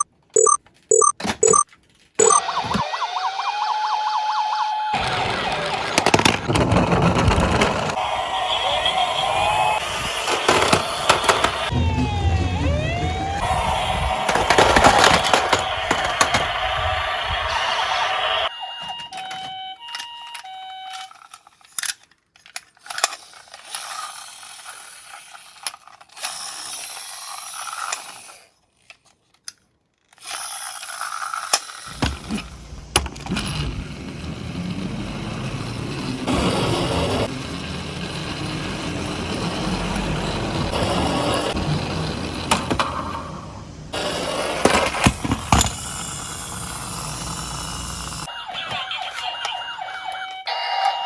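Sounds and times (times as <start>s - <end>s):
electronic beeps: 0.0s - 1.6s, 2.2s - 5.0s
toy siren wailing: 2.2s - 5.7s, 11.2s - 21.4s, 48.1s - 51.0s
toy cars rolling down a slope: 5.0s - 11.7s, 13.4s - 51.0s
toy cars clicking and clinking: 14.2s - 17.0s, 18.8s - 40.8s, 44.0s - 51.0s.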